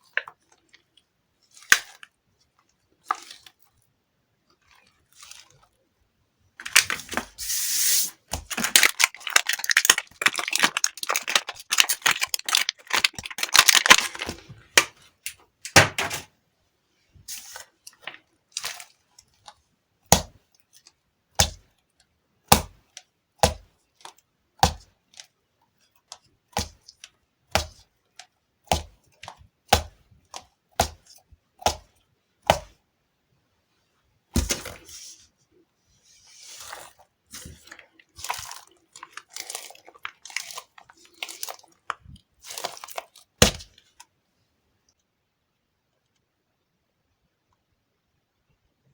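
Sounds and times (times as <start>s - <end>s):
sticky balls crackling and peeling: 8.2s - 15.9s, 22.5s - 32.8s, 36.4s - 44.0s.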